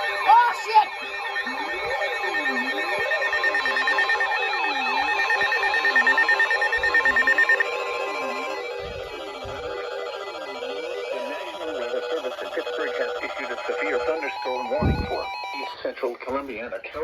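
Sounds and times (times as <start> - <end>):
warbling electronic alert tone: 0.0 - 15.9
rapid pulsing beep: 0.0 - 16.0.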